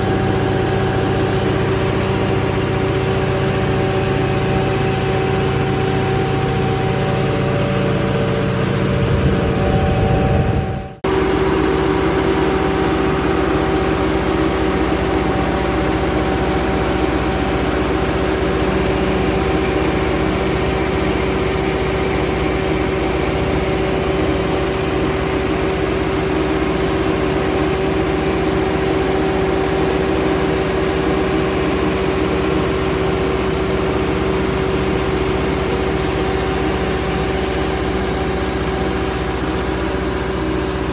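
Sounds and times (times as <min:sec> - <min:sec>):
mid-pitched hum: 0:00.0 - 0:14.9
diesel generator running: 0:00.0 - 0:40.9.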